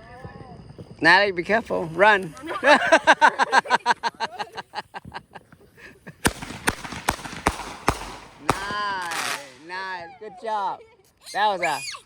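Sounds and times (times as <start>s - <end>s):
firework hiss: 6.0s - 9.8s
firework bangs: 6.1s - 9.8s.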